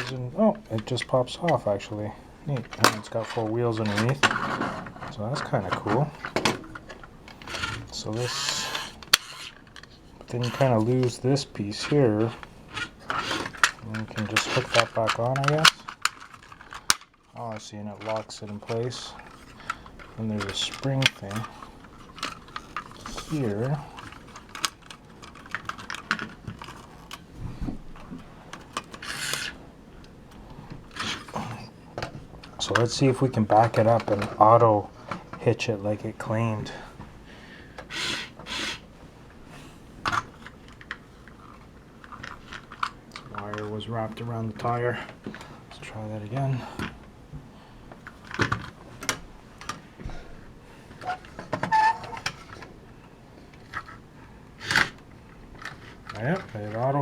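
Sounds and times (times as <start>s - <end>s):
plastic toy truck clicks and knocks: 11.8s - 27.3s, 54.6s - 56.9s.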